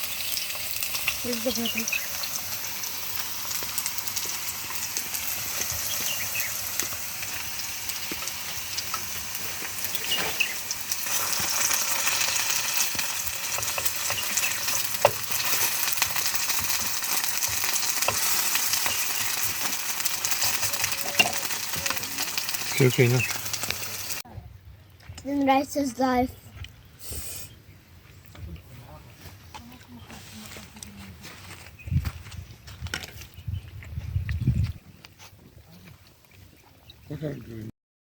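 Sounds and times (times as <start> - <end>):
sizzling hiss with crackles: 0.0 - 24.2.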